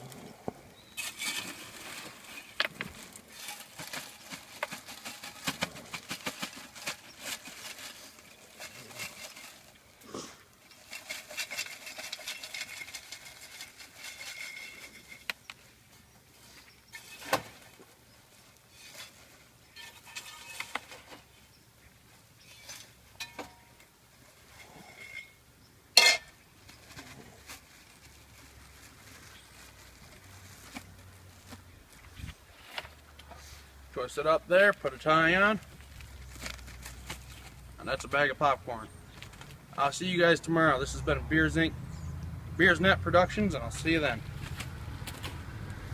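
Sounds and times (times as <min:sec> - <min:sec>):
popcorn rustling: 0:01.0 - 0:15.5, 0:26.6 - 0:33.6, 0:34.5 - 0:38.2.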